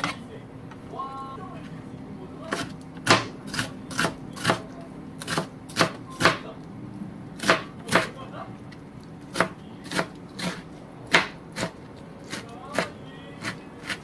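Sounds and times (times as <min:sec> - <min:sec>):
knife chopping on cutting board: 0:02.5 - 0:04.6, 0:05.2 - 0:06.5, 0:07.4 - 0:08.2, 0:09.2 - 0:14.0.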